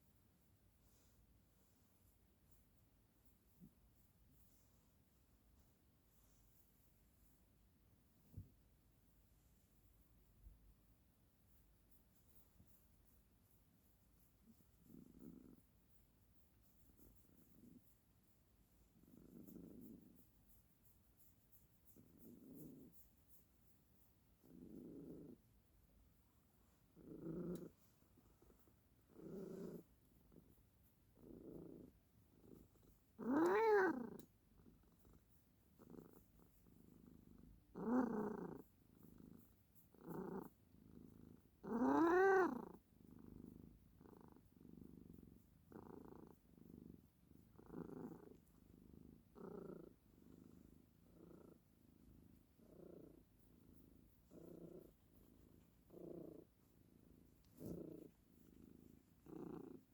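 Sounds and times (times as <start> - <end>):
cat purring: 0.0 - 59.9
cat meowing: 33.3 - 34.0, 41.8 - 42.6.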